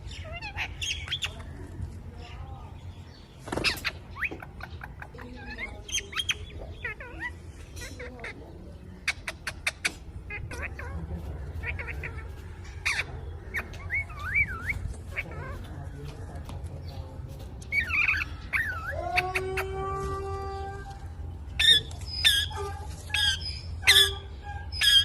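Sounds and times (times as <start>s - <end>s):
parrot squawking: 9.1s - 15.7s, 17.7s - 19.7s, 21.6s - 25.0s.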